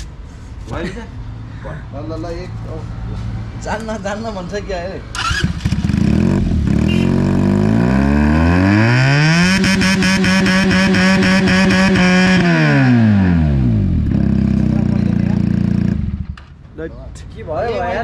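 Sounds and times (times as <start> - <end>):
motorcycle engine revving: 5.1 - 16.4.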